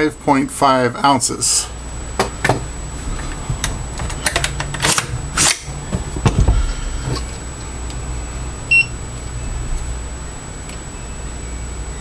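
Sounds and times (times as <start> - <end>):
dull knock: 5.9 - 6.7
high electronic beep: 8.7 - 8.9.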